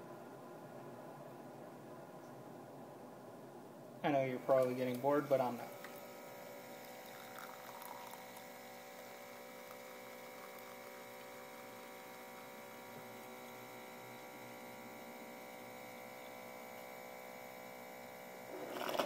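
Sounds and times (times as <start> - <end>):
coffee maker humming: 4.1 - 19.0.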